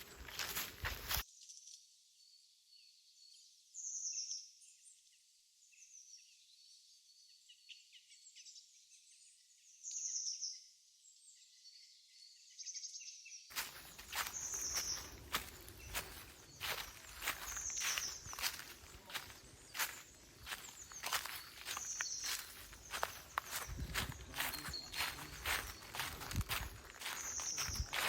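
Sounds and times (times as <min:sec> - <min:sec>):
footsteps crunching dry leaves: 0:00.0 - 0:01.2, 0:13.5 - 0:28.0
faint bird chirps: 0:00.0 - 0:28.0.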